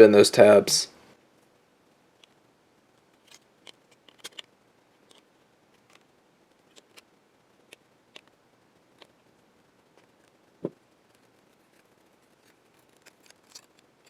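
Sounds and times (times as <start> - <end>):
metal tabs clicking and snapping: 3.2 - 5.2.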